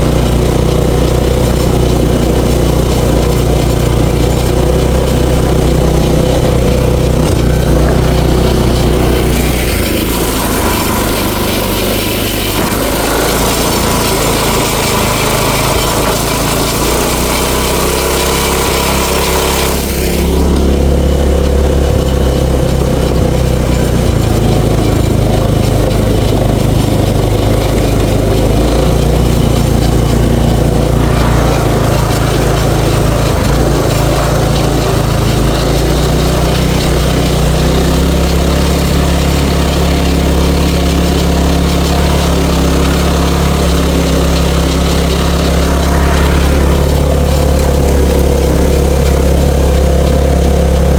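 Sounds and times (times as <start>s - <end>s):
golf cart engine running: 0.0s - 50.9s
hiss: 7.4s - 20.6s, 29.8s - 50.9s.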